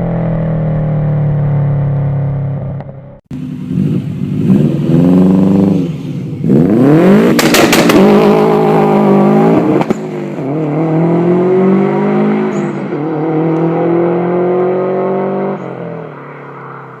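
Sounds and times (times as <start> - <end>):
exhaust bangs: 0.0 - 14.9
car engine revving: 0.0 - 16.8.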